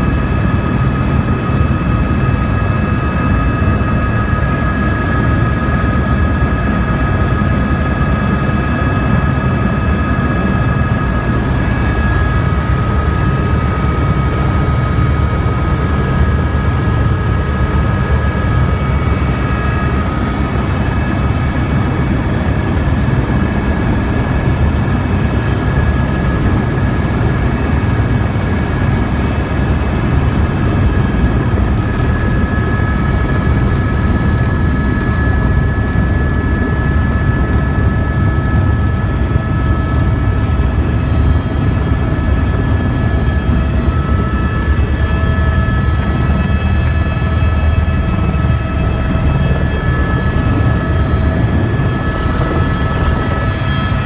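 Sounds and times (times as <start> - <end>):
helicopter rotor and engine: 0.0 - 54.0.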